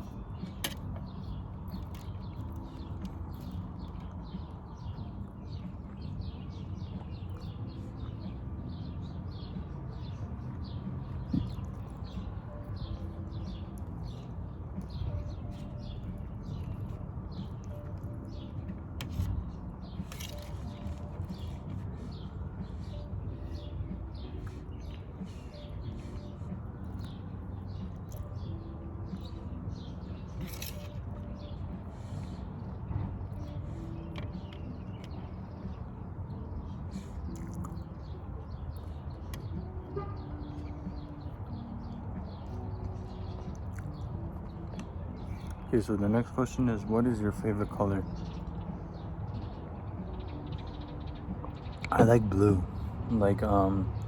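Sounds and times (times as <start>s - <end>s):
wet chewing mouth sounds: 10.5s - 28.4s, 36.3s - 39.4s, 41.0s - 45.7s.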